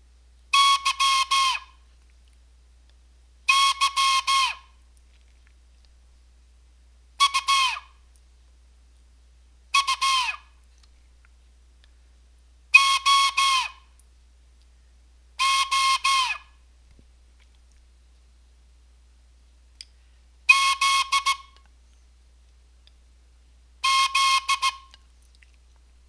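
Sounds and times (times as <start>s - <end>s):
morse code on whistle: 0.5s - 1.7s, 3.5s - 4.6s, 7.2s - 7.8s, 9.8s - 10.4s, 12.8s - 13.8s, 15.4s - 16.4s, 20.5s - 21.6s, 23.8s - 24.9s.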